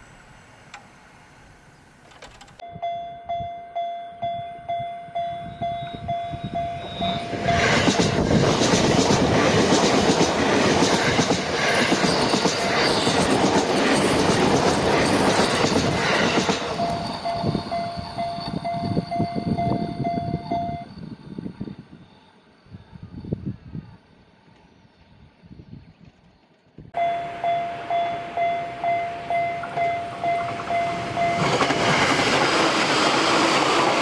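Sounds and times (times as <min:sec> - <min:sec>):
train wheels clattering: 0:07.3 - 0:19.6, 0:27.2 - 0:34.0
level-crossing bell clanging: 0:12.1 - 0:20.9, 0:27.0 - 0:32.4.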